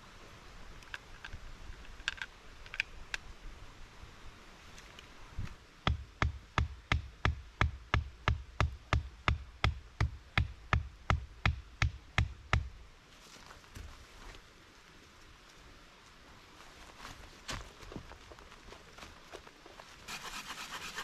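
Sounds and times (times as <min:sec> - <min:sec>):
hard knocks with deep thumps: 0:05.9 - 0:12.8.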